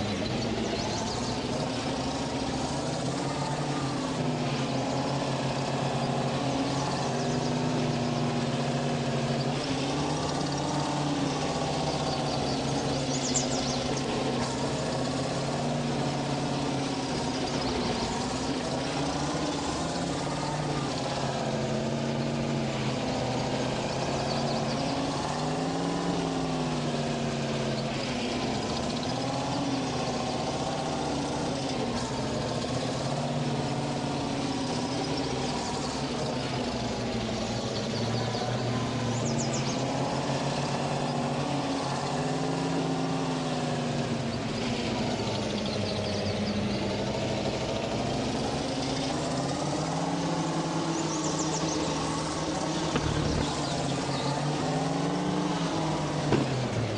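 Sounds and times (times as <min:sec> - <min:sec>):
vehicle engine running: 0:00.0 - 0:56.9.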